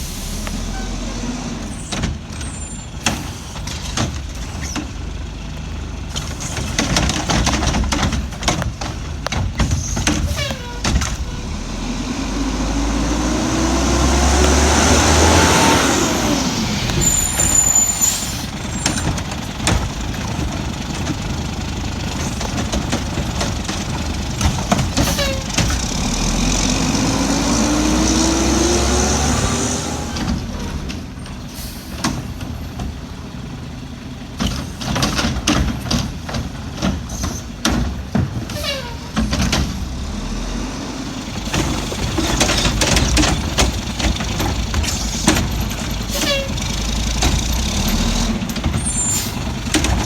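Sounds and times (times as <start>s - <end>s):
air brake hiss: 0.0s - 1.2s, 16.2s - 18.6s, 31.4s - 32.2s
garbage truck engine revving: 0.0s - 50.0s.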